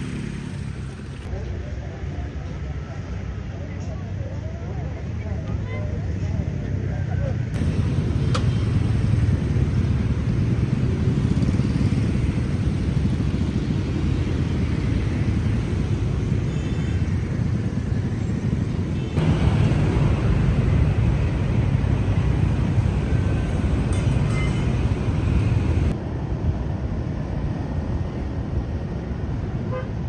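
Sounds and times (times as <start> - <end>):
motorbikes passing: 0.0 - 1.3, 7.5 - 26.0
traffic rumble: 0.0 - 30.0.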